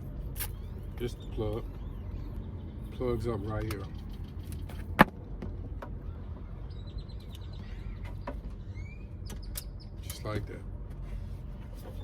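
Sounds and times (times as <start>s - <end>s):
faint bird chirps: 6.0s - 10.1s.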